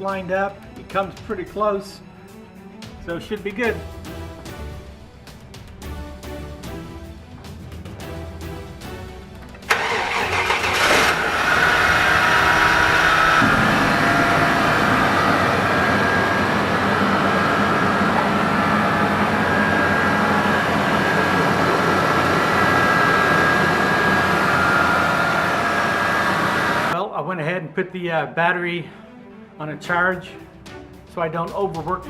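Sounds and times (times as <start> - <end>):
car starter cranking: 9.5 - 15.5
car engine idling: 9.6 - 27.0.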